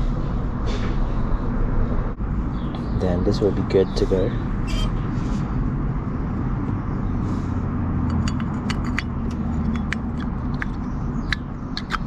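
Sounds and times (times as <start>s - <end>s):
low vehicle rumble: 0.0s - 12.0s
metallic clicks and taps: 8.1s - 12.0s.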